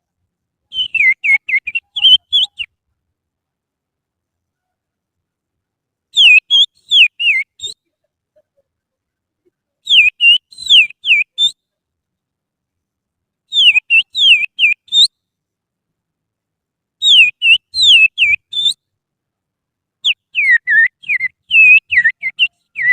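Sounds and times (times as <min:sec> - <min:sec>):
whistled bird-song imitation: 0:00.7 - 0:02.8, 0:06.1 - 0:08.0, 0:09.8 - 0:11.7, 0:13.5 - 0:15.2, 0:17.0 - 0:18.9, 0:20.0 - 0:22.9.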